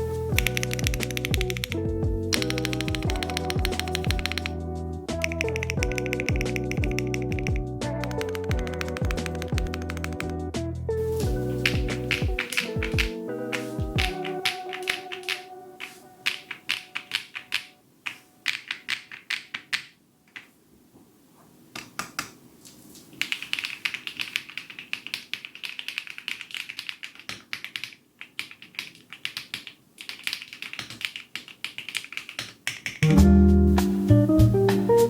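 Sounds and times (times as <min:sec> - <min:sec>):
guitar music: 0:00.0 - 0:16.2, 0:33.0 - 0:35.0
mechanical keyboard typing: 0:00.4 - 0:10.4, 0:11.5 - 0:20.5, 0:23.2 - 0:33.1.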